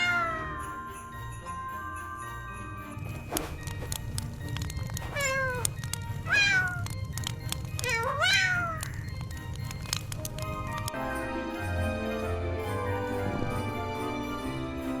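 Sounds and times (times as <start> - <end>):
kitten meowing: 0.0 - 0.7, 5.1 - 6.9, 7.8 - 9.2
soft background music: 0.0 - 15.0.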